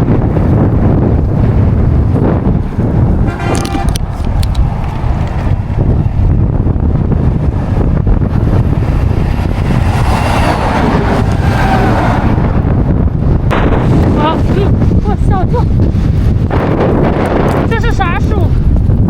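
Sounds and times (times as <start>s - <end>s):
vehicle passing on road: 0.0s - 15.0s
wind buffeting the microphone: 0.0s - 19.0s.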